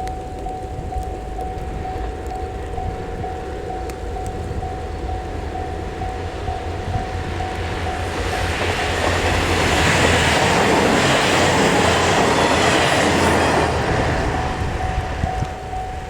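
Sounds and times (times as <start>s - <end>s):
level crossing bell: 0.0s - 8.4s, 11.9s - 16.0s
diesel train engine: 0.0s - 16.0s
wheels clattering on rail: 0.0s - 16.0s.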